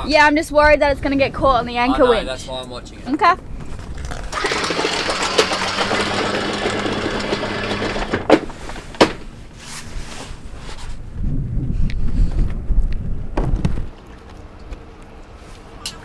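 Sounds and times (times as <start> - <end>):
anchor winch humming and rattling: 3.7 - 9.7
sharp clunks: 4.4 - 9.6.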